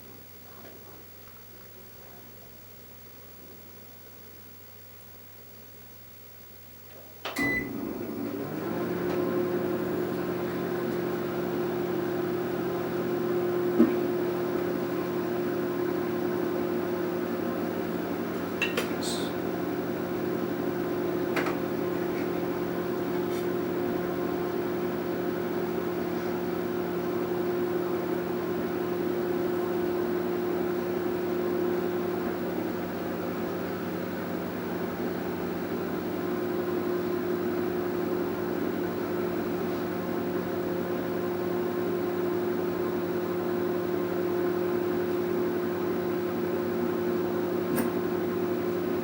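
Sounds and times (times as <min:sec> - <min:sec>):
microwave humming: 0:06.9 - 0:49.0
microwave beep: 0:07.2 - 0:08.1, 0:47.7 - 0:48.1.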